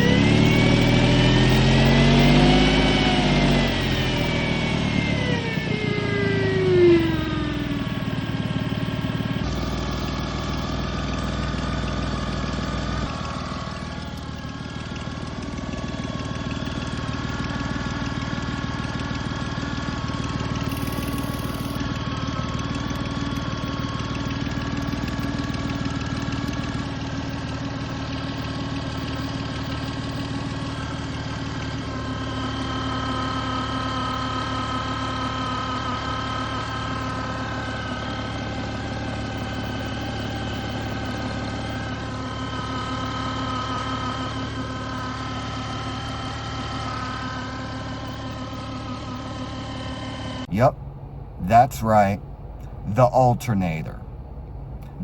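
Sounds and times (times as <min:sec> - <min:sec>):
high whining tones: 0:00.0 - 0:11.4, 0:20.6 - 0:21.8
car engine idling: 0:00.0 - 0:55.0.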